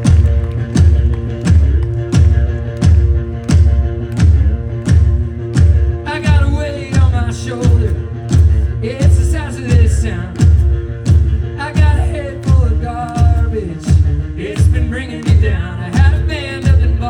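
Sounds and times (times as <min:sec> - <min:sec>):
bass drum beat: 0:00.0 - 0:17.0
rock band music: 0:00.0 - 0:17.0
lead vocal singing: 0:06.0 - 0:17.0.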